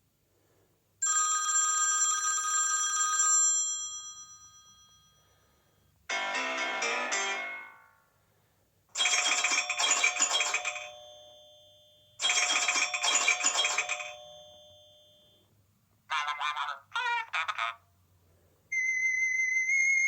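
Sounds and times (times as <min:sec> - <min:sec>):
different ringtone: 0:01.0 - 0:07.9, 0:09.0 - 0:15.4
bell-like ringtone chime: 0:01.0 - 0:08.0, 0:09.0 - 0:15.4.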